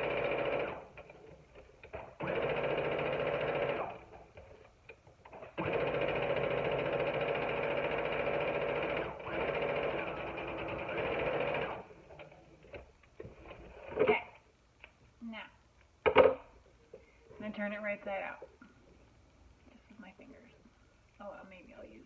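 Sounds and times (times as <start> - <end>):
sewing machine stitching: 0.0 - 1.3, 1.9 - 4.4, 5.3 - 11.9.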